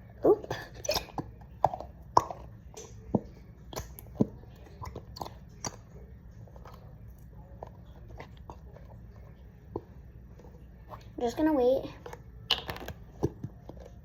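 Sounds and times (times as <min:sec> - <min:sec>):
slime squishing sticky pops: 0:12.4 - 0:13.9.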